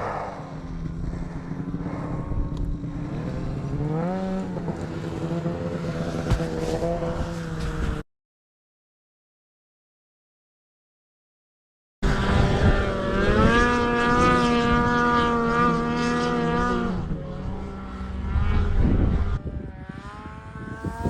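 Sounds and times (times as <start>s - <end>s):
snowmobile engine revving: 0.0s - 8.0s, 12.0s - 21.0s.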